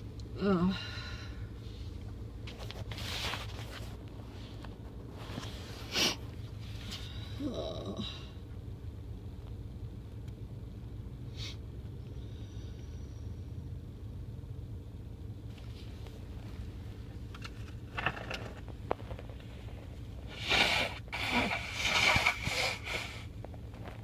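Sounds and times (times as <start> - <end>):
car idling: 0.0 - 24.0
car sneezing noise burst: 5.8 - 6.3, 20.3 - 23.3.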